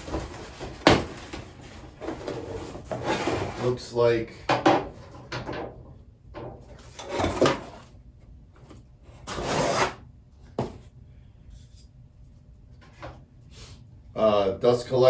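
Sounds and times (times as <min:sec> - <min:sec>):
cardboard packaging scraping: 0:00.0 - 0:03.8, 0:09.1 - 0:10.0.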